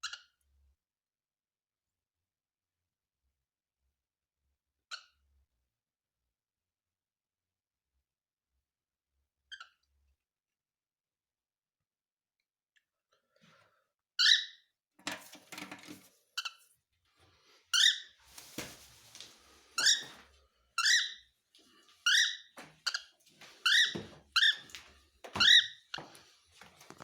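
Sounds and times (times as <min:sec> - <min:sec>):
scratchy rustling: 0:18.2 - 0:20.2
cockatiel chirping: 0:20.8 - 0:21.2.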